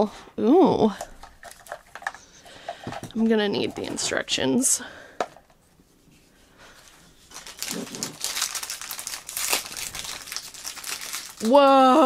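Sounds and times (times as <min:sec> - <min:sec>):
toy packaging crinkling: 0:01.2 - 0:02.2, 0:07.2 - 0:12.0.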